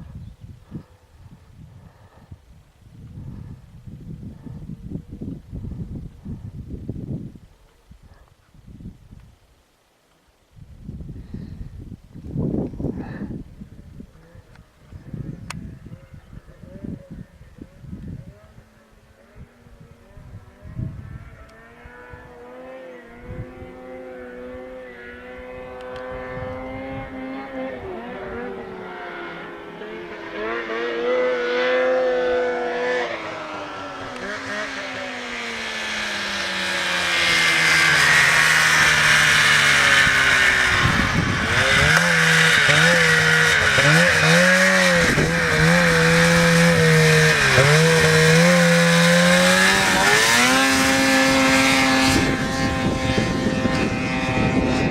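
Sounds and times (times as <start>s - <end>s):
snowmobile engine revving: 18.4s - 54.9s.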